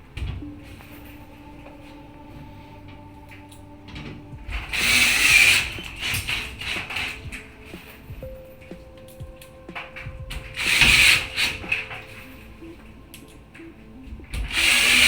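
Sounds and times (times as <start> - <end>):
faint background music: 0.0 - 15.0
loud noisy rasp: 4.6 - 8.0.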